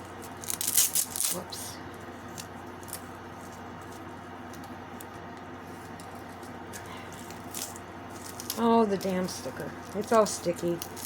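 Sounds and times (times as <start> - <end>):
steady low hum: 0.0 - 11.0
velcro strips rustling: 0.2 - 1.4.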